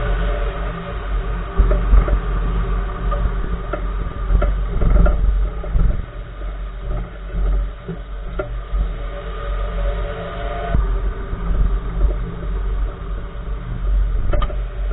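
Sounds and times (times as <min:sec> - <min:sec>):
road and tyre rumble: 0:00.0 - 0:14.9.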